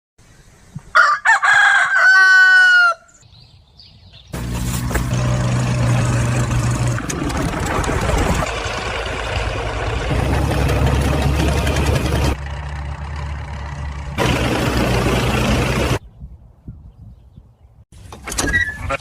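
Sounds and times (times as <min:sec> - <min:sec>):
engine humming: 0:04.3 - 0:16.0.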